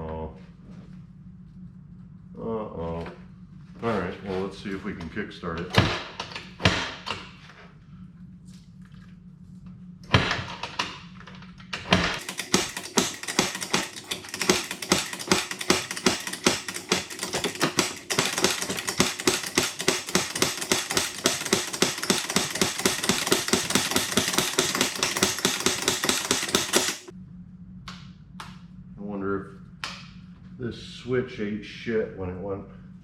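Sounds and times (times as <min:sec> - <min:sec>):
engine knocking beat: 0:12.2 - 0:27.1.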